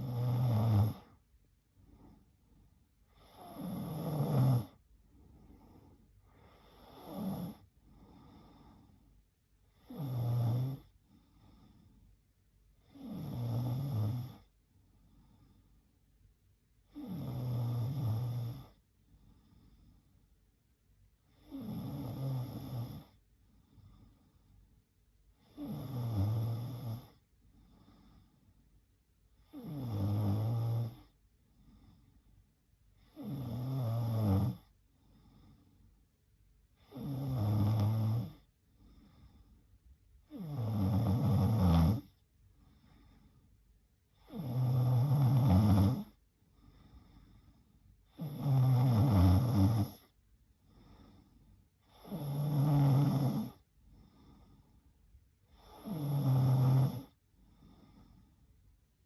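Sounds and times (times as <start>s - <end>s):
woman snoring: 0.0s - 1.2s, 3.1s - 4.8s, 6.3s - 8.7s, 9.7s - 10.9s, 12.8s - 14.5s, 16.8s - 18.8s, 21.3s - 23.2s, 25.4s - 27.2s, 29.4s - 31.2s, 33.0s - 34.7s, 36.8s - 39.4s, 40.2s - 42.2s, 44.1s - 47.4s, 48.1s - 50.1s, 51.8s - 54.5s, 55.5s - 58.2s.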